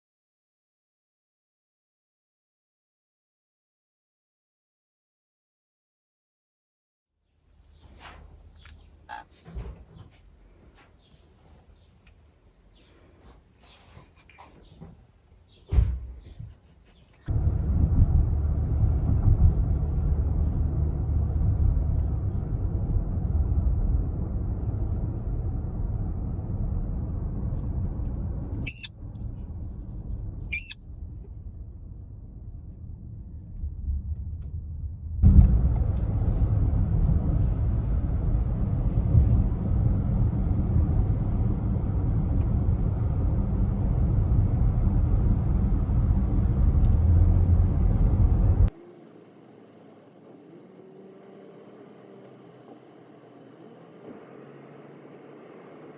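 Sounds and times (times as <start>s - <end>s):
car road and engine rumble: 17.2s - 55.9s
parrot squawks: 28.7s - 28.9s, 30.6s - 30.8s.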